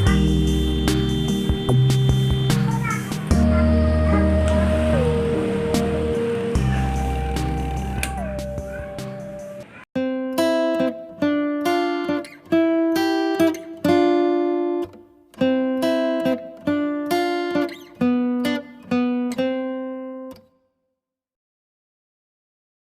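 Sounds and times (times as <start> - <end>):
plucked note melody: 0.0 - 11.8.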